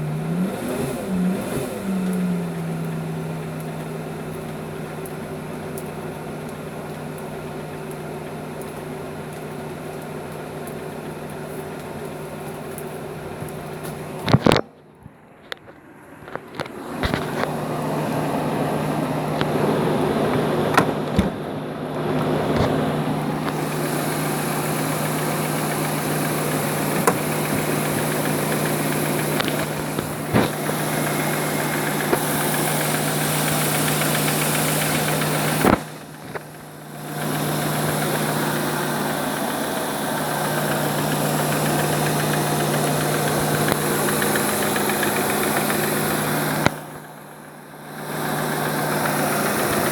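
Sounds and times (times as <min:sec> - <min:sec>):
car engine starting and idling: 0:00.0 - 0:49.9.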